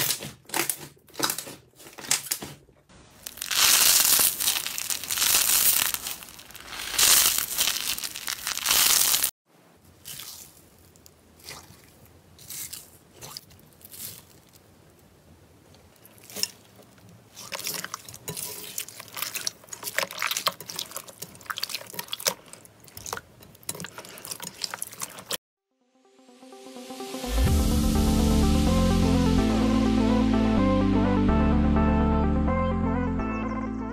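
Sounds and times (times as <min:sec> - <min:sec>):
dense crackling: 0:03.0 - 0:09.3
slime squeezed by hand: 0:03.2 - 0:09.3.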